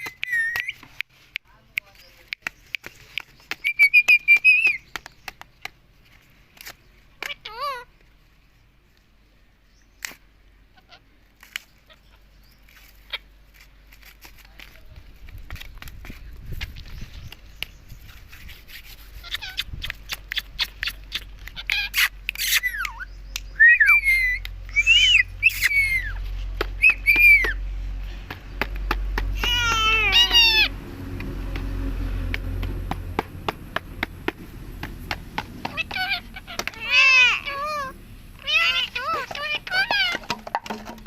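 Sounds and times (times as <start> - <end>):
parakeet whistled calls: 0.0 - 0.8, 3.6 - 4.8, 21.6 - 26.2, 26.8 - 27.6.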